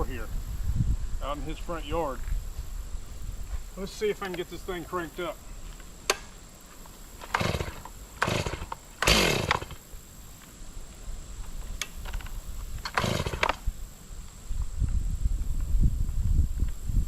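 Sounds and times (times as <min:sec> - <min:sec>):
chainsaw starter cord pulls: 0:07.2 - 0:09.8, 0:12.8 - 0:13.6.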